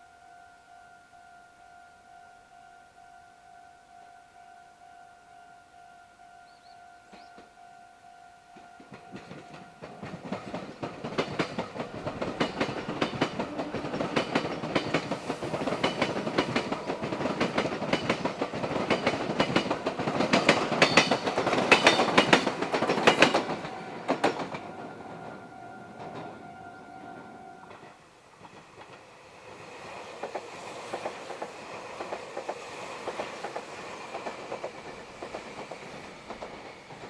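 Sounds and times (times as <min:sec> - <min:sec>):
train wheels clattering over rail joints: 0:08.6 - 0:37.0.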